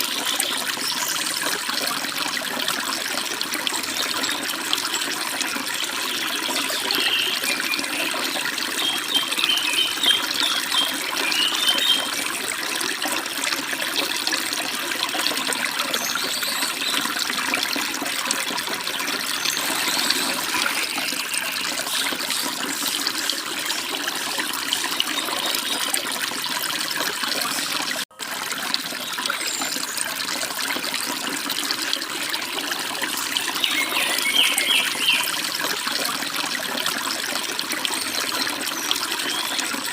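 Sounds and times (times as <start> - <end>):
stream running over rocks: 0.0 - 39.9
bird chirps: 6.5 - 12.1, 33.6 - 35.2.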